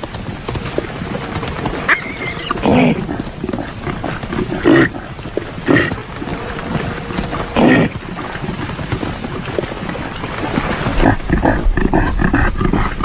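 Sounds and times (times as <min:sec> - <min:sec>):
steady background noise: 0:00.0 - 0:13.0
reindeer grunting calls: 0:01.8 - 0:08.5.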